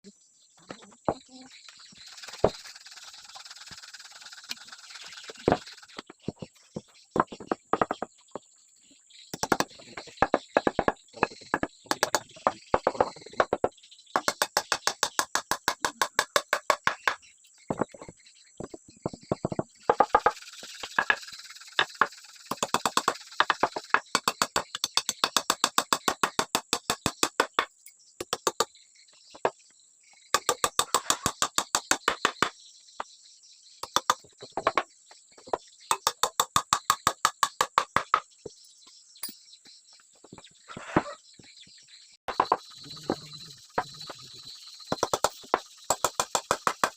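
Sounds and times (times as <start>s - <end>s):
hammer striking wood: 9.4s - 20.4s, 21.8s - 28.7s, 30.4s - 32.5s, 33.8s - 34.8s, 35.9s - 38.3s, 42.3s - 42.7s, 44.9s - 46.9s.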